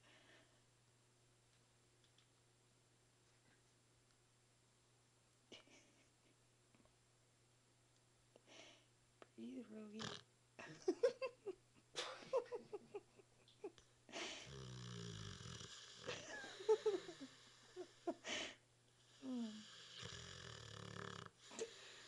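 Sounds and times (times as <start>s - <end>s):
dog snoring: 10.0s - 10.3s, 14.4s - 18.1s, 19.0s - 22.0s
wheezy squeaks and snorts: 10.0s - 10.3s, 19.4s - 21.7s.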